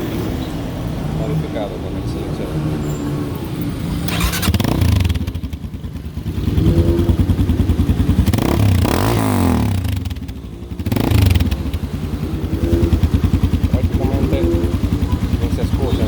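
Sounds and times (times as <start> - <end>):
motorcycle engine revving: 3.9 - 16.0.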